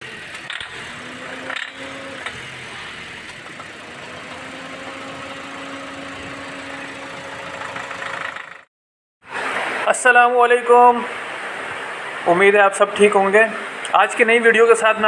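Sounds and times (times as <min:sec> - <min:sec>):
car engine idling with knocking: 0:01.5 - 0:05.9.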